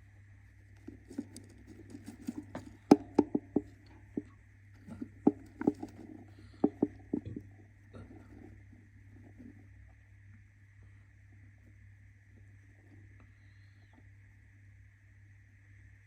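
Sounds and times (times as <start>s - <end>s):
faint steady hum: 0.0s - 16.0s
budgie scratching and tapping: 0.6s - 9.8s.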